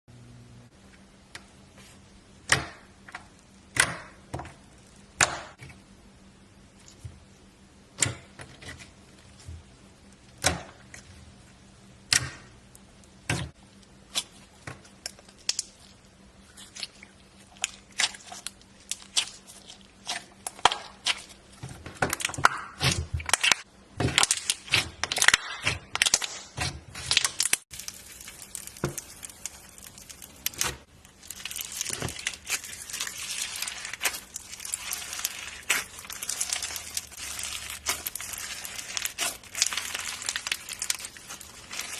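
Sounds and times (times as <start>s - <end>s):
slime crackling and squishing: 13.4s - 41.9s.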